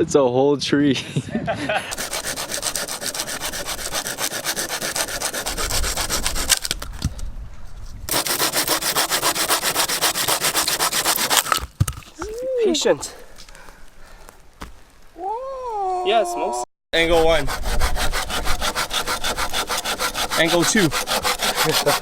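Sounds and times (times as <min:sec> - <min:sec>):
hand saw cutting wood: 0:01.9 - 0:06.8, 0:08.1 - 0:11.6, 0:17.0 - 0:22.0.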